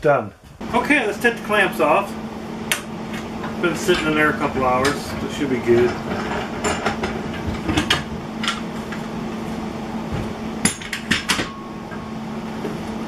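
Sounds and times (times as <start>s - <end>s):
steady low hum: 0.0s - 13.0s
metal clamps clanking: 3.4s - 9.0s, 10.6s - 12.1s.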